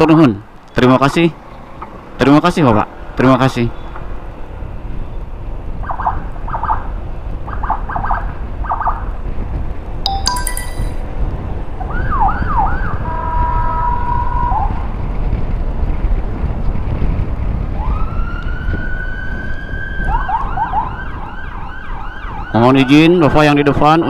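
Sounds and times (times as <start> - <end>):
wind rumble on microphone: 3.9 - 10.0, 11.0 - 22.6.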